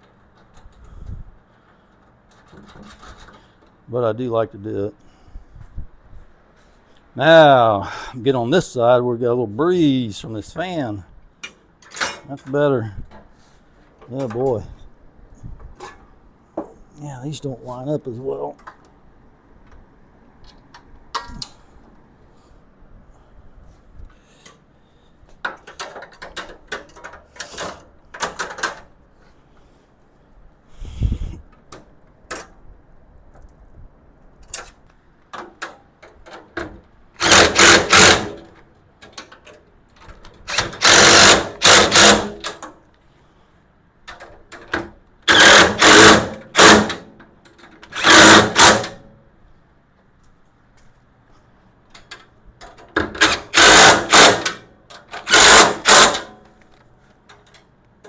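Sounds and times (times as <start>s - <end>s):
power driver running bolts: 36.6s - 39.2s, 40.1s - 42.7s, 45.2s - 47.1s, 47.8s - 49.0s, 52.9s - 56.5s.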